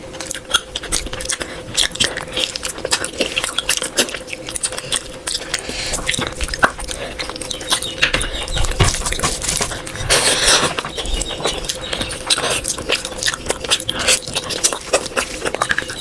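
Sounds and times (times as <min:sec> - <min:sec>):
person chewing with mouth smacks: 0:00.0 - 0:16.0.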